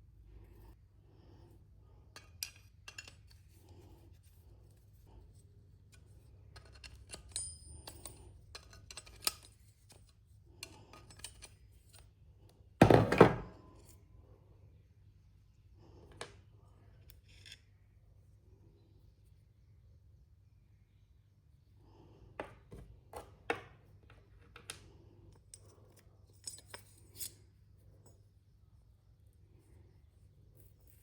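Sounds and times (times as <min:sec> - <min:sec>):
tools and metal parts clinking: 0:02.1 - 0:03.9, 0:05.9 - 0:12.1, 0:24.2 - 0:28.3.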